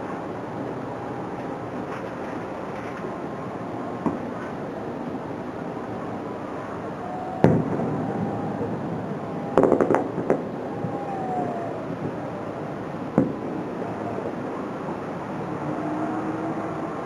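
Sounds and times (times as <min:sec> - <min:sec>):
steady background hiss: 0:00.0 - 0:17.0
firework bangs: 0:07.4 - 0:08.3, 0:09.6 - 0:11.0
firework cracks: 0:09.6 - 0:10.5.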